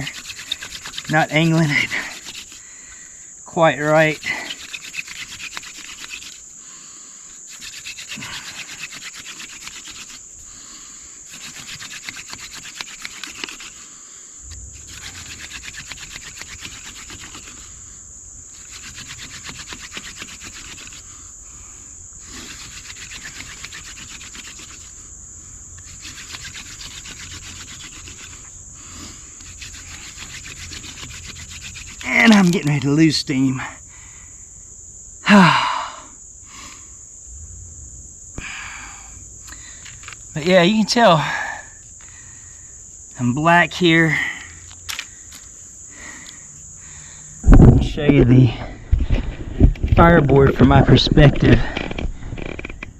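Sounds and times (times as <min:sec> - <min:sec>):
wooden spindle grinding and squeaking: 0:00.0 - 0:02.6, 0:03.6 - 0:06.5, 0:07.4 - 0:10.3, 0:11.3 - 0:13.8, 0:14.5 - 0:17.8, 0:18.5 - 0:21.2, 0:22.2 - 0:25.1, 0:25.8 - 0:33.4, 0:49.2 - 0:52.9
crickets and insects chirping: 0:00.0 - 0:52.9.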